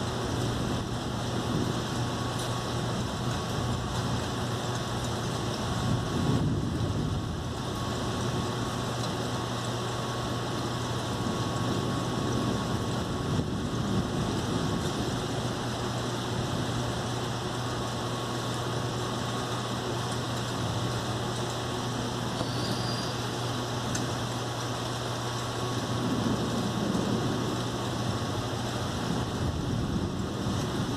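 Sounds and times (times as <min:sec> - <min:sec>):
rain rushing: 0:00.0 - 0:30.9
wind: 0:00.0 - 0:30.9
thunder rolling: 0:00.2 - 0:08.8, 0:11.0 - 0:17.1, 0:25.6 - 0:30.9.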